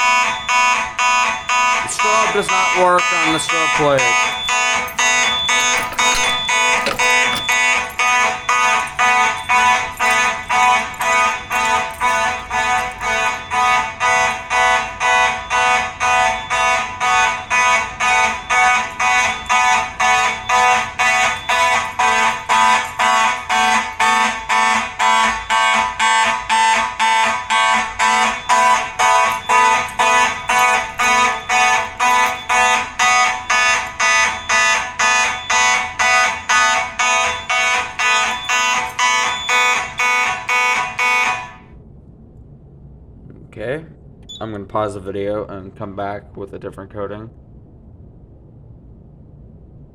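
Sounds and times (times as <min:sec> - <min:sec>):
pulsed fire alarm horn: 0:00.0 - 0:41.7.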